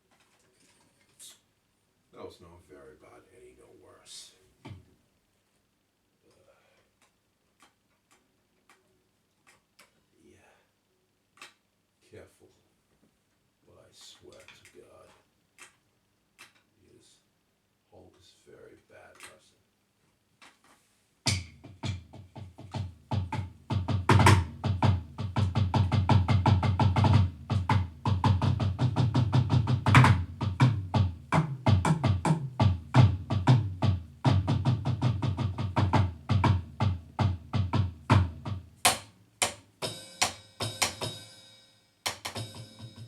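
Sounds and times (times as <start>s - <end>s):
electronic drum groove: 21.3s - 41.4s, 42.1s - 43.0s.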